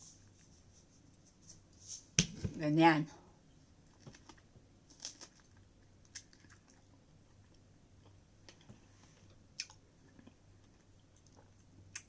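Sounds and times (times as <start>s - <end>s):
chewing strawberries: 4.2s - 8.2s, 9.6s - 12.0s.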